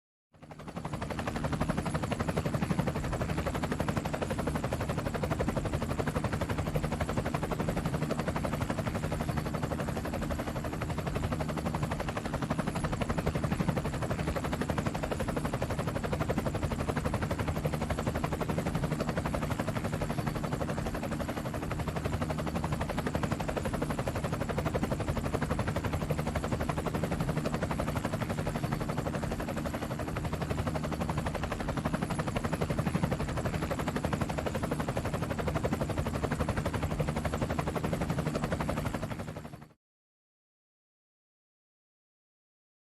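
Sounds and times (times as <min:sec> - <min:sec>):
helicopter engine hum: 0:00.4 - 0:39.8
helicopter rotor blades chopping: 0:00.4 - 0:39.8.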